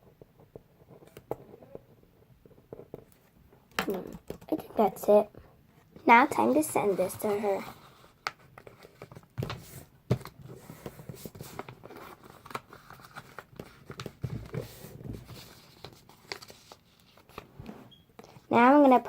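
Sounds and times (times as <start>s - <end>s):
paper rustling and crinkling: 6.0s - 17.6s.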